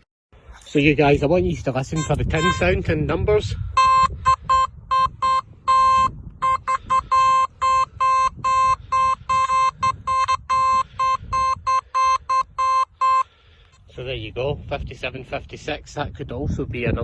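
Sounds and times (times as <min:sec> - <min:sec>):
metal detector beeping: 0:01.9 - 0:02.8, 0:03.7 - 0:13.3.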